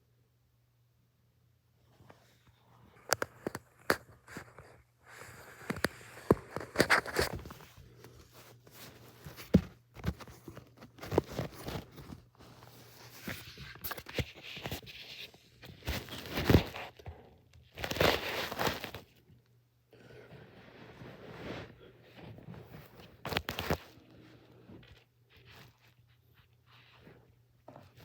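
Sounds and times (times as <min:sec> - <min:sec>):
rustling of things handled: 0:01.9 - 0:28.0.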